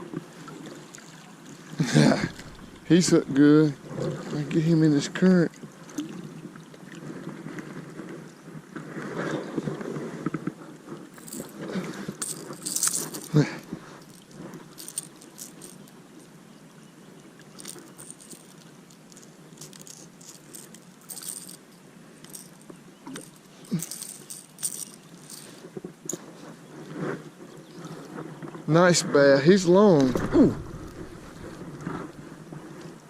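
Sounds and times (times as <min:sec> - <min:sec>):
fishing tackle rattling and clicking: 0:02.1 - 0:03.5, 0:11.1 - 0:16.0, 0:17.5 - 0:26.2, 0:30.0 - 0:32.4.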